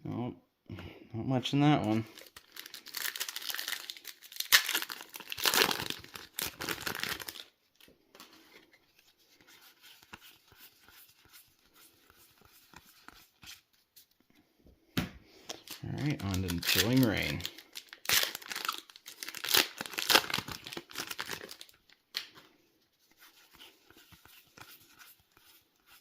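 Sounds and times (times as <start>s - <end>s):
foil wrapper crinkling and tearing: 2.1s - 7.6s, 15.5s - 22.3s
trading cards rustling and clicking: 15.5s - 22.5s.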